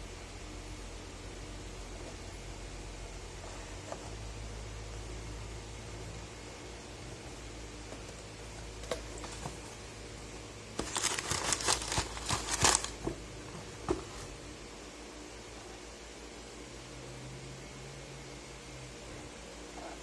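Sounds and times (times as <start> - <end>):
packaging crinkling and rustling: 8.8 - 9.8, 10.8 - 13.2.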